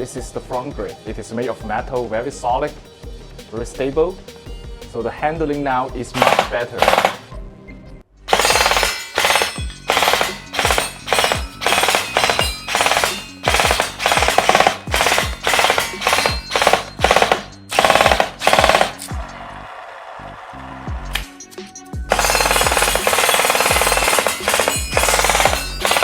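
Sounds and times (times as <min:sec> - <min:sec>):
music: 0:00.0 - 0:26.0
gel blaster firing bursts: 0:06.2 - 0:07.2, 0:08.3 - 0:19.1, 0:22.1 - 0:26.0.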